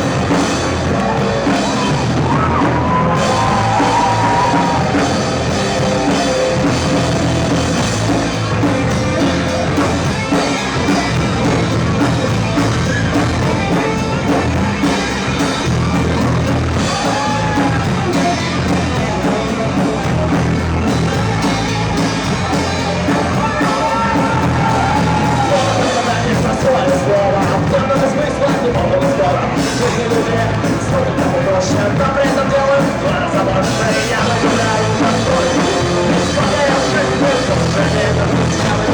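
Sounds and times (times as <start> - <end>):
person singing lead vocal: 0.0 - 7.9, 16.1 - 38.9
live rock band playing: 0.0 - 38.9.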